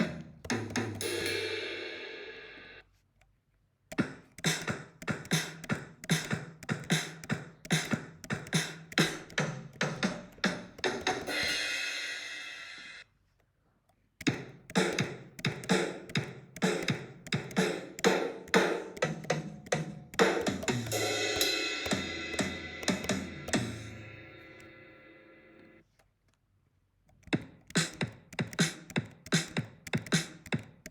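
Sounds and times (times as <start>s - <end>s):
acoustic drum kit playing: 0.0s - 2.6s, 3.9s - 13.0s, 14.2s - 25.0s, 27.4s - 30.9s
ringing cymbal wash: 1.0s - 2.8s, 20.9s - 25.7s.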